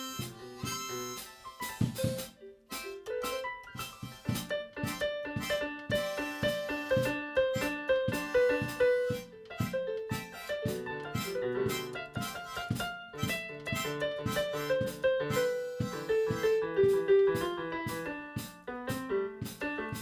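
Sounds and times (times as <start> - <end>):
keyboard instrumental music: 0.0 - 20.0.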